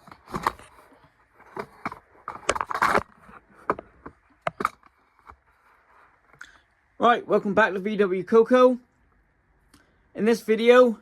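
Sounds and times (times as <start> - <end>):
cardboard crunching and scraping: 0.0 - 4.0.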